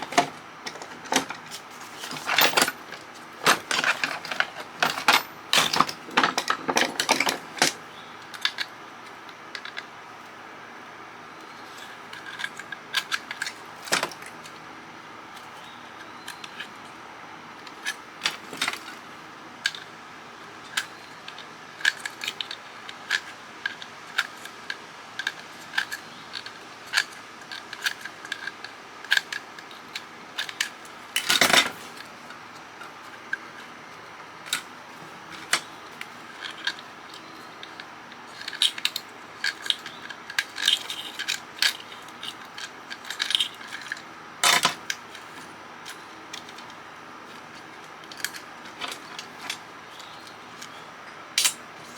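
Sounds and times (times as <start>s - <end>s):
parts rattling: 0.0s - 8.7s, 20.6s - 51.9s
screwdriver and metal parts clinking: 0.0s - 8.7s, 20.6s - 33.7s, 34.5s - 51.9s
faint steady hum: 0.0s - 51.9s.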